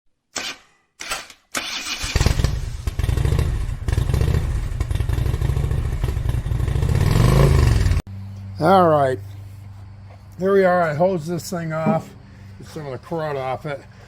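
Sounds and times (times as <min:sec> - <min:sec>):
motorcycle engine running: 0:02.2 - 0:08.0.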